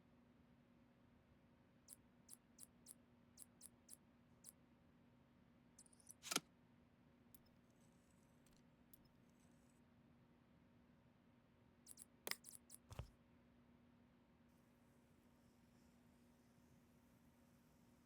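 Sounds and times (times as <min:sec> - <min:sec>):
small sharp clicks of computer parts: 0:05.8 - 0:06.4, 0:11.9 - 0:13.1.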